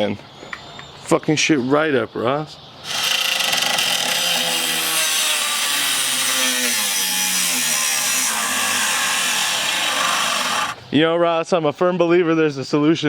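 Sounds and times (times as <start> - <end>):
reciprocating saw cutting: 2.8 - 10.8.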